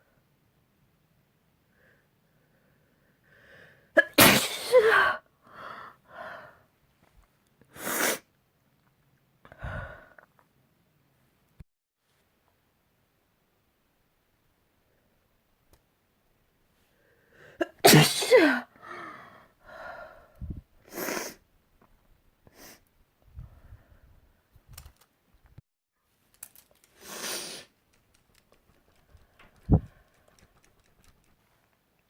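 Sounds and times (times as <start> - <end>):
person sneezing loudly: 4.0 - 5.2, 17.6 - 18.7
sharp breath: 27.0 - 27.7.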